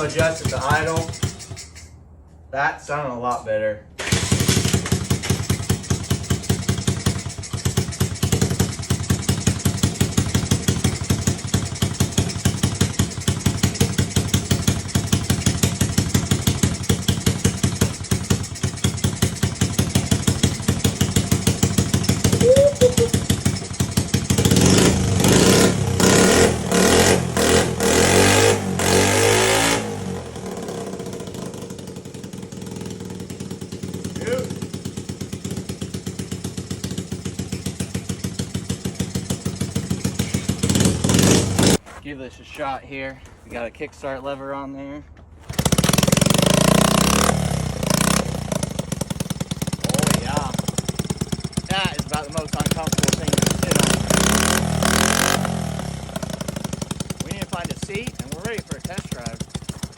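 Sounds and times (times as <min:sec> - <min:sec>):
small motorcycle engine idling: 0:00.0 - 0:02.0, 0:04.0 - 0:41.8, 0:45.5 - 0:59.9
engine throttle blips: 0:16.8 - 0:32.9, 0:45.5 - 0:59.9.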